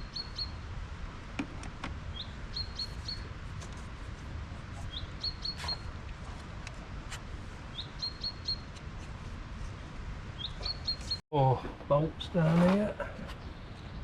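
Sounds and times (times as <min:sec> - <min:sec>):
small bird calling: 0:02.1 - 0:03.3, 0:04.8 - 0:06.0, 0:07.7 - 0:08.8, 0:10.3 - 0:11.2.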